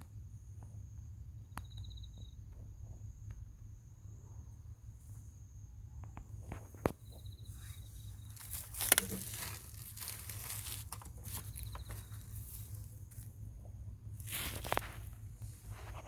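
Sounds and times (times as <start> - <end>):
rustling: 6.6 - 16.0
footsteps: 8.2 - 13.4
scuff: 14.2 - 16.0.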